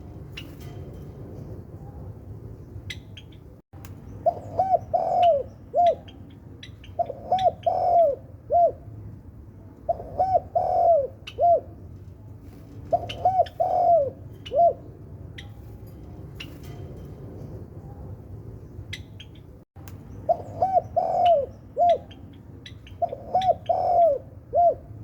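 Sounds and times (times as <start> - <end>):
dove cooing: 4.2 - 8.9, 9.9 - 11.8, 12.9 - 14.9, 20.2 - 25.0.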